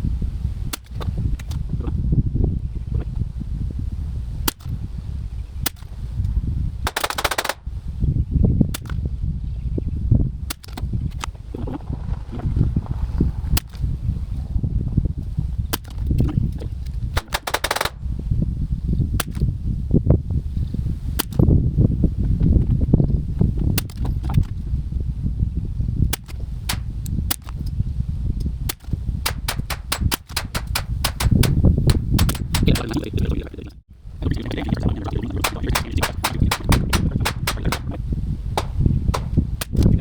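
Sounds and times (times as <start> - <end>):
wind rumble on microphone: 0.0 - 6.9, 7.6 - 40.0
rifle shots cracking: 6.9 - 7.6, 17.2 - 18.0, 29.3 - 32.8.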